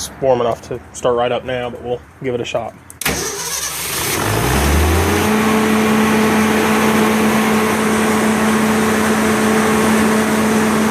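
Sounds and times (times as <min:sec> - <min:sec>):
generator humming: 0:03.0 - 0:10.9.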